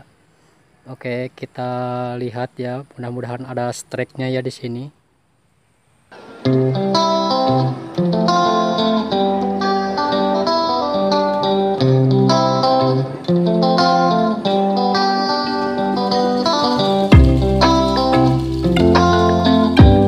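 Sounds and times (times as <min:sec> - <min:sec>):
guitar plucked and strummed chords: 0:06.1 - 0:20.0.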